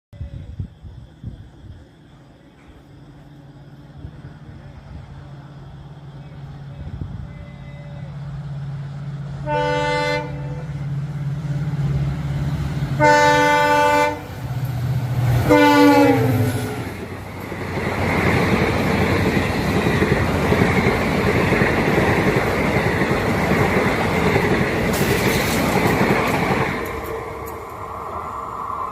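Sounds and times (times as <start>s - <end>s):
locomotive engine rumble: 0.3s - 28.9s
train wheels rattling on rails: 1.1s - 28.9s
locomotive horn blasts: 9.4s - 10.9s, 13.0s - 14.3s, 15.4s - 16.8s.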